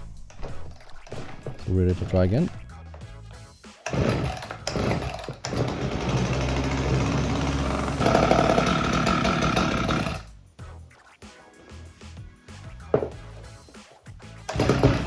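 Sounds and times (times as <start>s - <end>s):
chainsaw running: 3.9s - 10.3s, 14.5s - 15.0s
chainsaw starter pulls: 3.9s - 10.3s, 14.5s - 15.0s.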